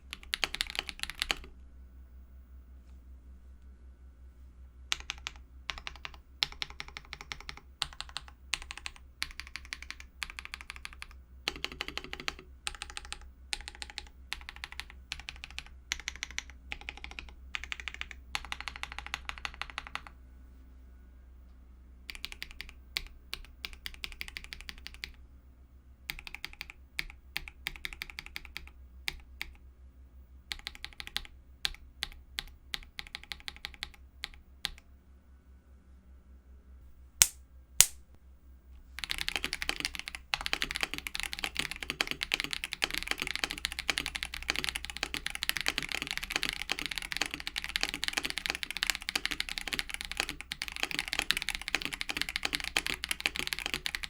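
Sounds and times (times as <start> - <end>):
mechanical keyboard typing: 0.0 - 1.5, 4.9 - 20.1, 22.1 - 25.2, 26.1 - 29.6, 30.5 - 34.8, 39.0 - 54.0.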